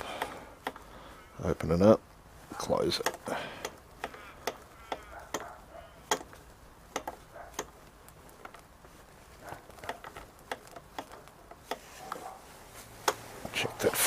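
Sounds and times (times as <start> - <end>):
spanner clicking on brake nipple: 0.0 - 0.9, 3.0 - 8.7, 9.6 - 11.9
brake being pumped: 0.0 - 1.1, 2.4 - 14.0.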